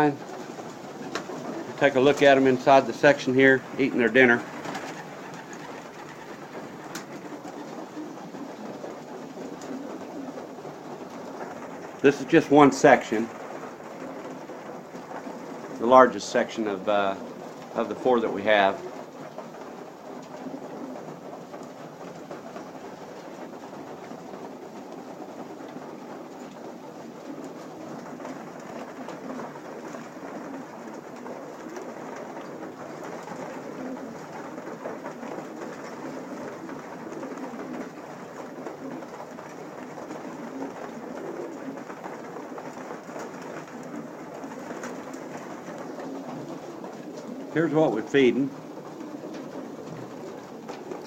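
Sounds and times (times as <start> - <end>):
pigeons pecking: 0.0 - 51.0
small clicks and rustles: 4.4 - 12.1, 18.8 - 47.6, 48.5 - 51.0.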